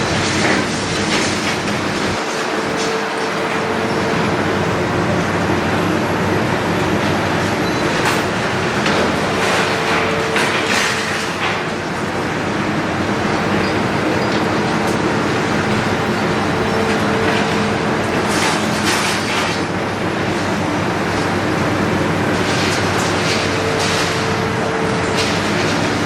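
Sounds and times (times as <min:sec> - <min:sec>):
demolition machinery running: 0:00.0 - 0:26.0
sharp clanks and crunches: 0:16.9 - 0:19.7, 0:22.4 - 0:26.0.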